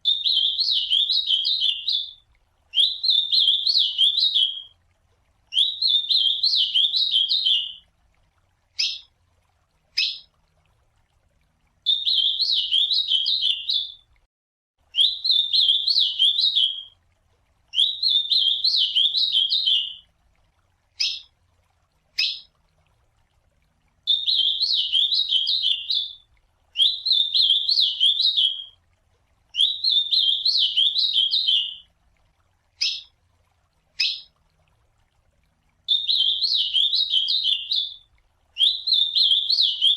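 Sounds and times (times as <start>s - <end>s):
bird singing warbled phrases: 0.0s - 4.7s, 5.5s - 7.8s, 8.8s - 9.1s, 10.0s - 10.3s, 11.9s - 14.0s, 15.0s - 16.9s, 17.7s - 20.0s, 21.0s - 21.3s, 22.2s - 22.5s, 24.1s - 26.2s, 26.8s - 28.8s, 29.6s - 31.9s, 32.8s - 33.1s, 34.0s - 34.3s, 35.9s - 39.9s.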